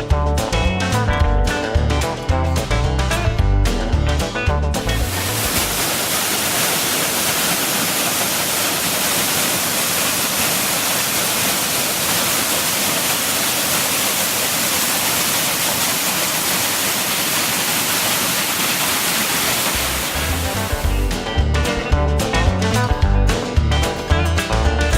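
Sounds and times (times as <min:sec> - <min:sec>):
guitar music: 0:00.0 - 0:05.8, 0:20.2 - 0:24.9
waterfall pouring: 0:04.9 - 0:21.1.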